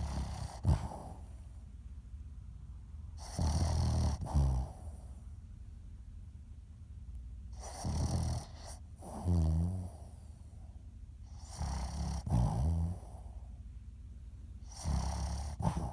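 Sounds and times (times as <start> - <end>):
dog snoring: 0.0 - 1.4, 3.2 - 5.1, 7.5 - 10.5, 11.2 - 13.5, 14.6 - 15.9
dog breathing: 0.0 - 1.5.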